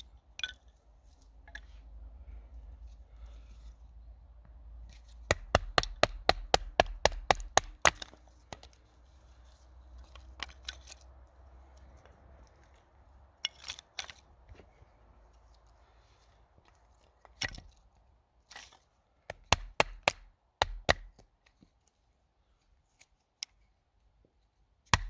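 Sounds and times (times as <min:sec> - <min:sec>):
sharp knocks on wood: 0:05.3 - 0:08.1, 0:19.3 - 0:21.1.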